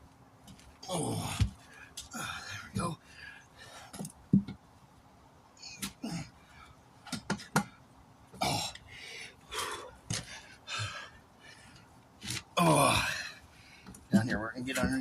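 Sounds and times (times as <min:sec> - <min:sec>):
man grunting with effort: 0:00.8 - 0:03.0, 0:05.7 - 0:06.3, 0:08.4 - 0:08.8, 0:12.6 - 0:13.4.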